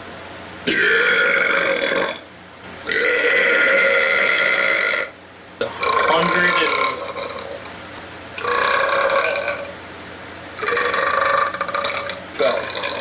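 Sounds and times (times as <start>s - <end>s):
loud belches: 0.6s - 2.2s, 2.8s - 7.7s, 8.4s - 9.8s, 10.6s - 13.0s.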